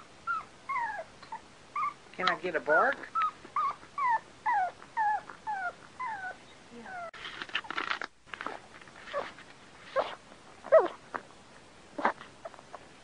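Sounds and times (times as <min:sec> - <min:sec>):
dog whimpering and whining: 0:00.0 - 0:02.0, 0:03.0 - 0:07.2, 0:08.5 - 0:11.0.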